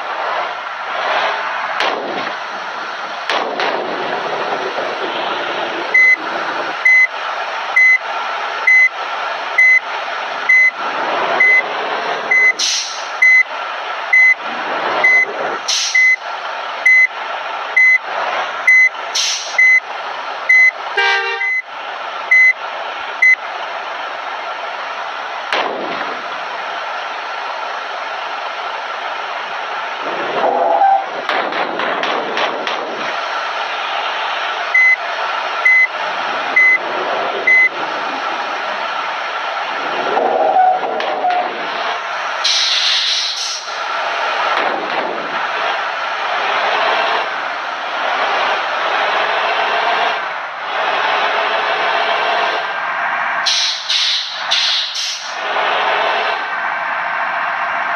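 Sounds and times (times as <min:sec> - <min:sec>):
engine and traffic noise: 0:00.0 - 0:57.9
reversing alarm beeping: 0:05.9 - 0:06.2, 0:06.8 - 0:07.1, 0:07.8 - 0:08.0, 0:08.6 - 0:09.0, 0:09.6 - 0:09.9, 0:10.5 - 0:10.8, 0:11.4 - 0:11.7, 0:12.3 - 0:13.5, 0:14.1 - 0:14.4, 0:15.0 - 0:16.2, 0:16.8 - 0:17.1, 0:17.8 - 0:18.0, 0:18.6 - 0:19.8, 0:20.5 - 0:21.7, 0:22.3 - 0:22.6, 0:23.2 - 0:23.4, 0:34.7 - 0:35.0, 0:35.6 - 0:35.9, 0:36.6 - 0:36.8, 0:37.4 - 0:37.8
air hiss bursts: 0:12.6 - 0:13.1, 0:15.7 - 0:16.0, 0:19.2 - 0:19.6, 0:42.4 - 0:43.8, 0:53.4 - 0:55.4
horn blast: 0:20.9 - 0:21.6.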